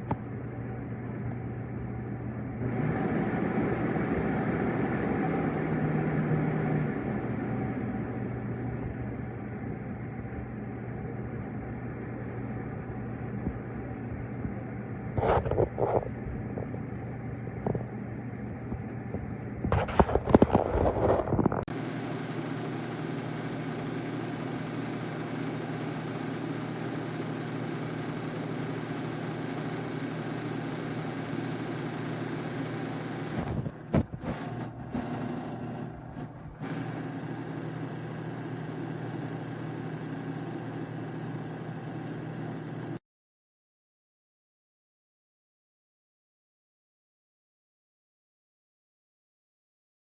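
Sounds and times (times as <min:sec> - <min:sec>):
humidifier fan whirring: 0:00.0 - 0:43.0.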